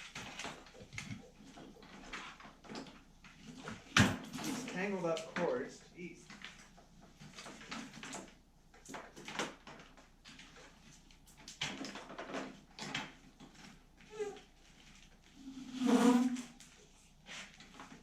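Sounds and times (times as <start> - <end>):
cord and hose rustling and scraping: 0.0 - 18.0.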